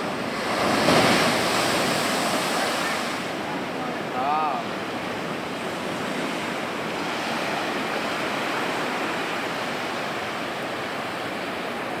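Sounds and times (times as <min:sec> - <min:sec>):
ocean surf breaking: 0:00.0 - 0:12.0.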